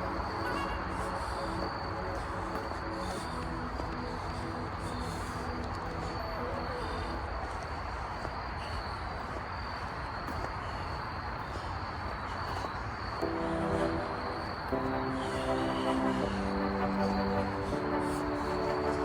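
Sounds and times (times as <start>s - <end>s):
background music: 0.0s - 7.5s, 13.2s - 19.0s
steady rushing noise: 0.0s - 19.0s.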